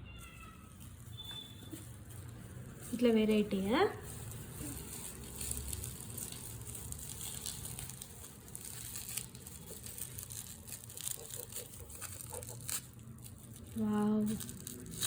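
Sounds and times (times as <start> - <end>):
bubble wrap crinkling: 0.0 - 15.0.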